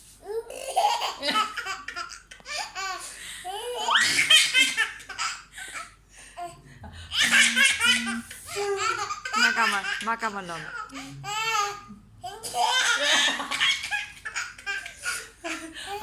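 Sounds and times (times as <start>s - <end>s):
young children laughing: 12.4s - 16.0s.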